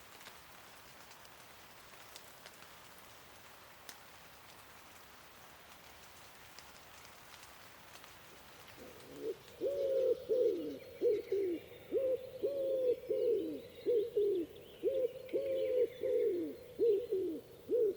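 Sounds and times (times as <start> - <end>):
bird low hooting calls: 8.8 - 17.9
higher birdsong chirps: 9.6 - 17.9.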